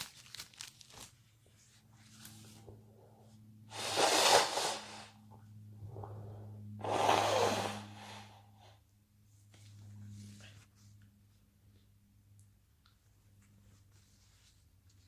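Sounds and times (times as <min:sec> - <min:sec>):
faint breath or sniff: 0:03.7 - 0:05.2.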